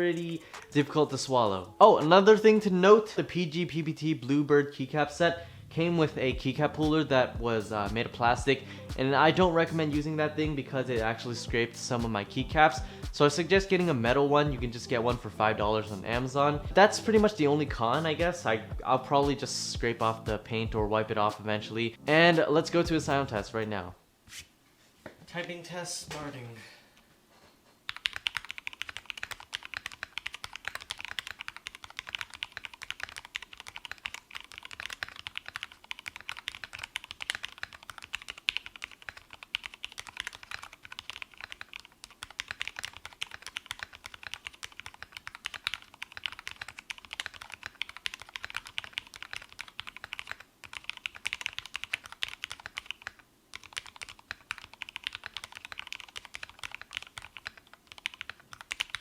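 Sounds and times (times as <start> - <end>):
fast mechanical keyboard typing: 27.9 - 59.0.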